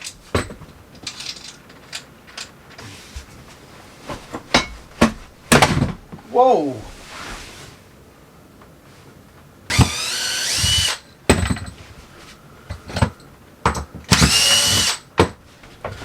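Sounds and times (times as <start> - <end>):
power drill whining: 9.7 - 11.0, 14.1 - 15.0.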